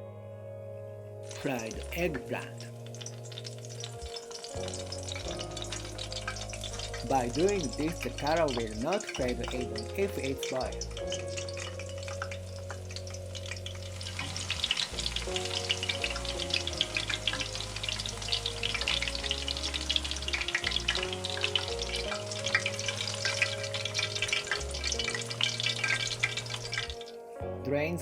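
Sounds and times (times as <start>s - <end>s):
food deep-frying in hot oil: 1.2s - 27.1s.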